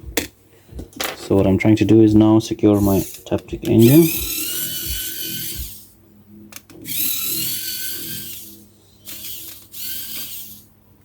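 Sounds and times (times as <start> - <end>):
electric screwdriver whining: 2.8 - 5.9, 6.8 - 10.6.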